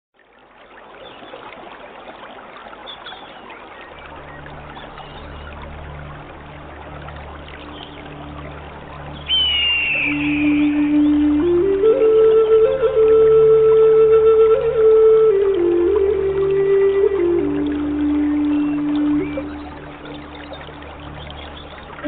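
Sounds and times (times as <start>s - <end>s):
water trickling: 0.2s - 22.0s
low music drone: 4.0s - 22.0s
faint bird chirps: 9.2s - 11.2s
loud high whistle sliding down: 9.3s - 11.0s.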